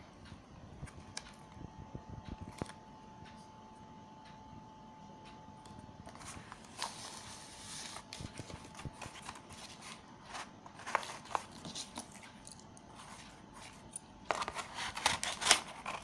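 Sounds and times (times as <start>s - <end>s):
packaging rustling: 6.1s - 12.3s, 12.9s - 16.0s
packaging clicks: 13.7s - 16.0s.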